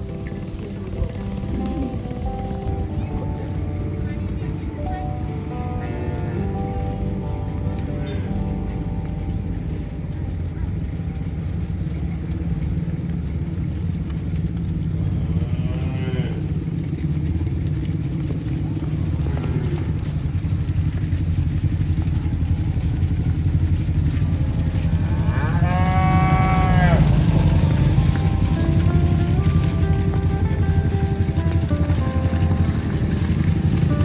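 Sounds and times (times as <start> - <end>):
cattle mooing: 0.0 - 2.9, 5.5 - 9.0, 14.9 - 16.9, 18.1 - 20.5, 21.9 - 34.0
steady low rumble: 0.0 - 34.0.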